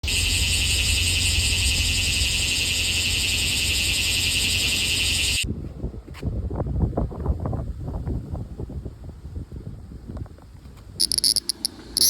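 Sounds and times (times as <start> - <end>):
cicada buzzing: 0.0 - 5.4, 11.0 - 12.0
low rumble: 0.0 - 5.4.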